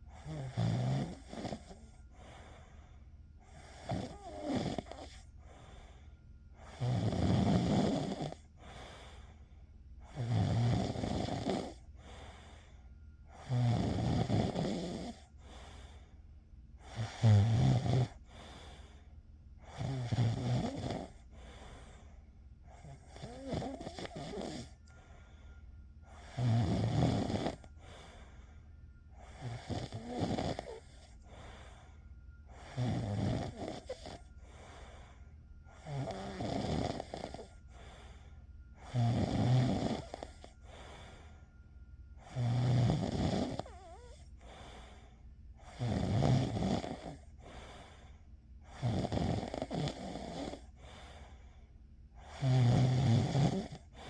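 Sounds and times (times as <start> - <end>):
quiet breathing: 0.0 - 54.0
person snoring: 0.1 - 2.5, 3.5 - 5.8, 6.6 - 9.2, 10.1 - 12.6, 13.3 - 15.9, 16.8 - 19.0, 19.6 - 22.0, 22.7 - 25.0, 26.1 - 28.4, 29.2 - 41.3, 42.2 - 45.0, 45.6 - 48.0, 48.6 - 51.3, 52.2 - 54.0.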